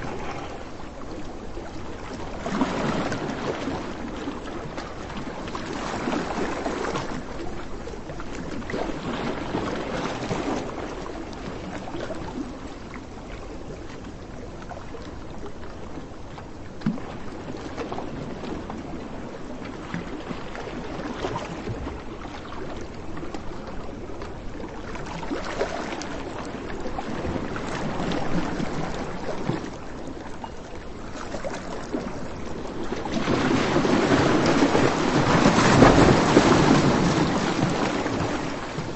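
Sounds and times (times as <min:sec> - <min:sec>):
sea surf washing onto beach: 0:32.9 - 0:38.9.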